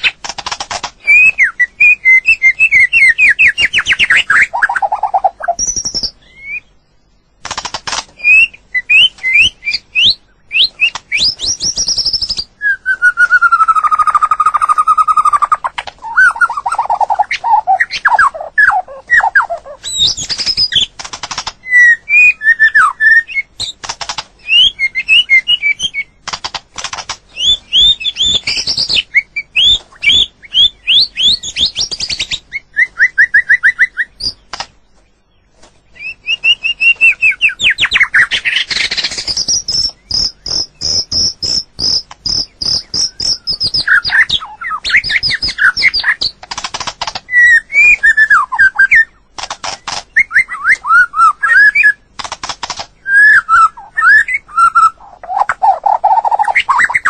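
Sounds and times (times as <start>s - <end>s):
sharp bird clicks: 0.0s - 6.6s, 7.4s - 32.6s, 33.2s - 57.0s
bird singing whistled phrases: 1.0s - 6.7s, 8.2s - 20.9s, 21.6s - 23.5s, 24.4s - 26.2s, 27.3s - 34.4s, 36.0s - 46.3s, 47.3s - 49.2s, 50.1s - 52.0s, 53.0s - 57.0s.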